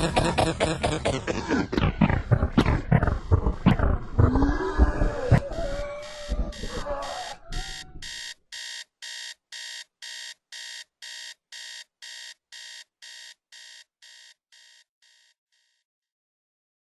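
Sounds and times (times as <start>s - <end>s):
electronic alarm beeping: 2.0s - 15.4s.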